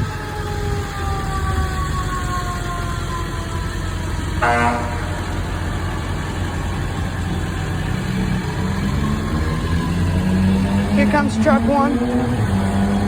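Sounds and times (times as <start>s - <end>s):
fire engine rumbling: 0.0s - 13.0s
short horn blast: 4.4s - 5.2s.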